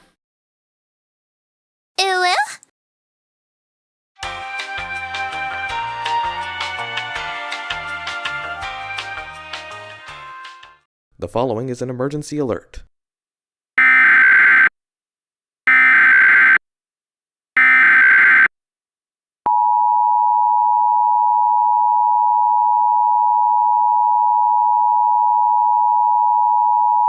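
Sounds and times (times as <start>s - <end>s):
steady two-tone alert signal: 13.8s - 14.7s, 15.7s - 16.6s, 17.6s - 18.5s
harsh digital data bursts: 15.7s - 16.6s, 17.6s - 18.5s.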